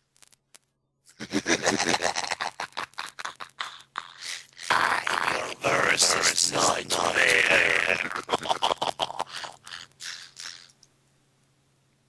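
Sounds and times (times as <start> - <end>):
garbled robotic voice on call: 1.2 - 10.6.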